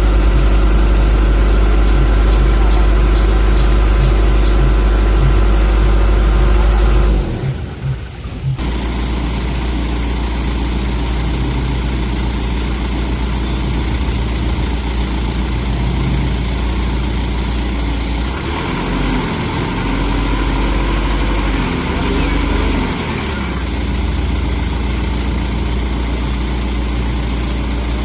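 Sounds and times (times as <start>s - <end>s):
truck engine rumbling: 0.0s - 28.0s.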